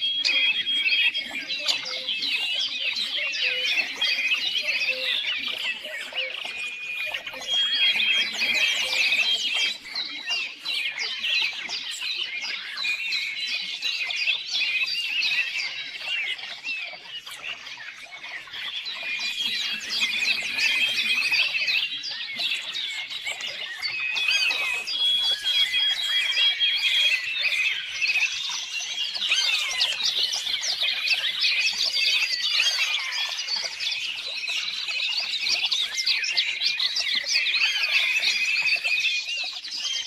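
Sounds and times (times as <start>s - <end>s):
songbirds chirping and trilling: 0.0s - 40.0s.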